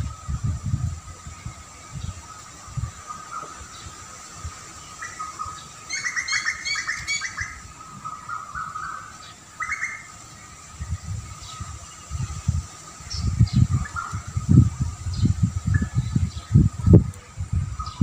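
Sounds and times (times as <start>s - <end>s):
low gusty rumbles: 0.0s - 5.6s, 10.2s - 18.0s
songbirds chirping: 0.0s - 18.0s.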